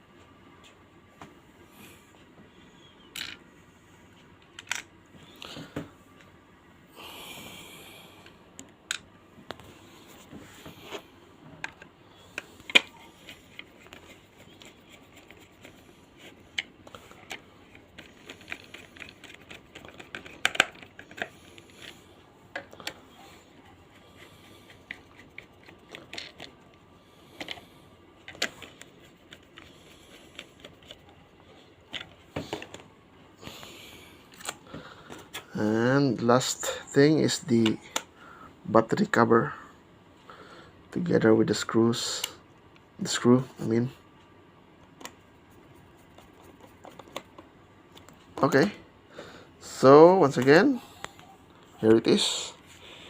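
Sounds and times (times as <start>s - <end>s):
plastic parts handling clicks: 18.0s - 21.9s.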